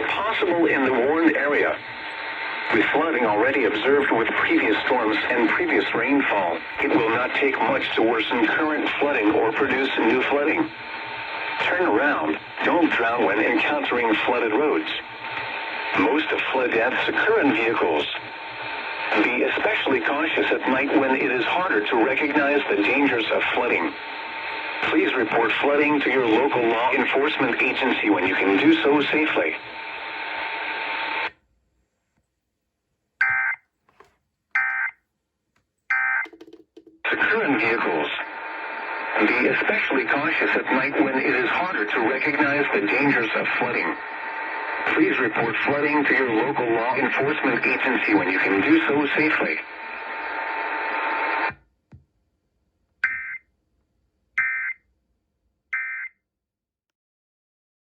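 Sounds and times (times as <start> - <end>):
radio hiss: 0.0 - 31.3, 37.0 - 51.5
digital data tone bursts: 53.0 - 53.4.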